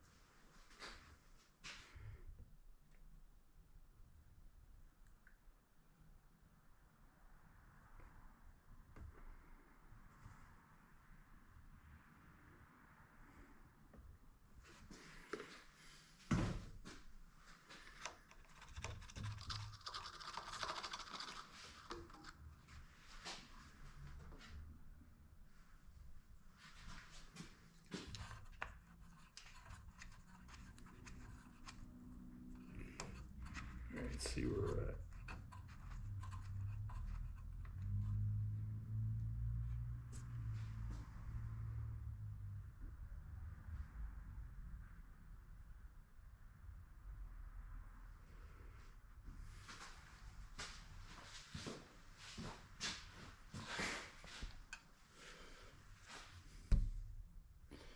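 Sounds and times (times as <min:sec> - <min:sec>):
dipstick clicks and rubbing: 0:17.8 - 0:22.6, 0:27.8 - 0:38.4
hands scraping and scratching: 0:17.8 - 0:22.6, 0:27.9 - 0:38.1.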